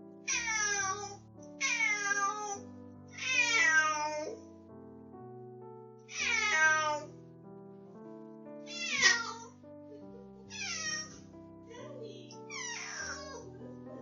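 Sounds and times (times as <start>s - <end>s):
soft background music: 0.0s - 14.0s
cat meowing loudly: 0.3s - 4.4s, 6.1s - 7.1s, 8.7s - 9.5s, 10.5s - 11.2s, 12.5s - 13.4s.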